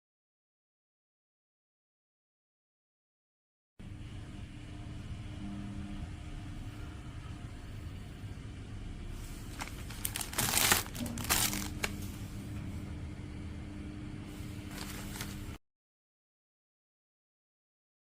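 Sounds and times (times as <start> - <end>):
steady low hum: 3.8 - 15.6
packaging crinkling: 9.4 - 12.0, 14.7 - 15.5.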